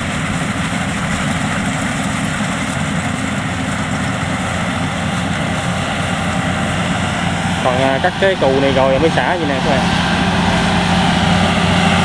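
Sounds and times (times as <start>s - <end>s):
combine harvester running: 0.0s - 12.0s.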